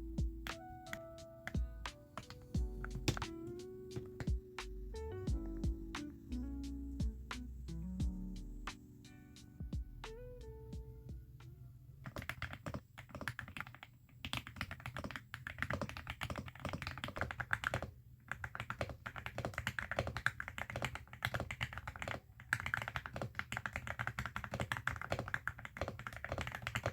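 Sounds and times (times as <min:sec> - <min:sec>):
mechanical keyboard typing: 0:00.4 - 0:04.4, 0:12.1 - 0:26.9.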